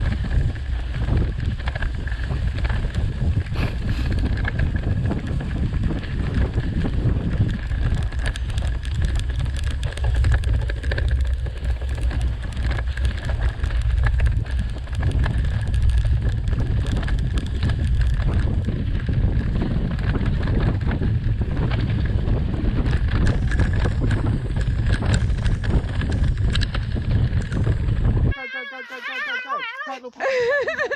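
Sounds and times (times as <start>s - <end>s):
bike clicks and rattles: 0.0s - 28.4s
wind buffeting microphone: 0.0s - 28.4s.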